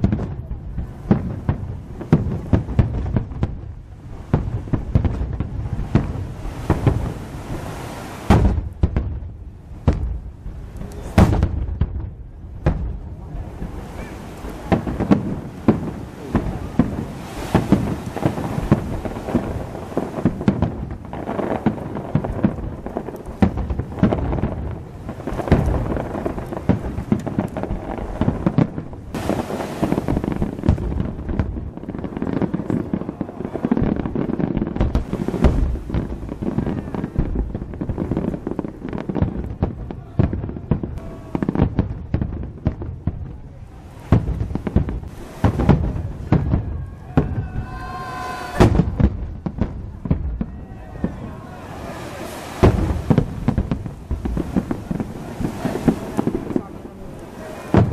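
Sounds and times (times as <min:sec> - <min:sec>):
fireworks booming: 0:00.0 - 0:57.9.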